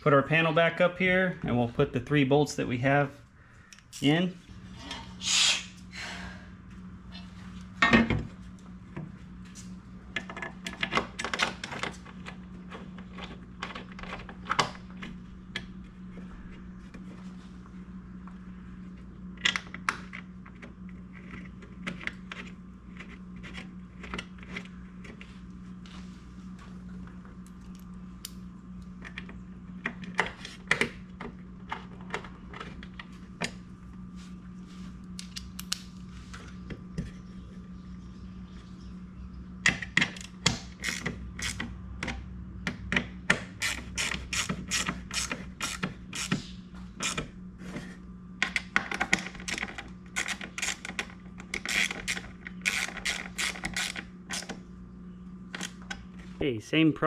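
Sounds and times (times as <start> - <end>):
ratchet wrench clicking: 43.6 - 46.4.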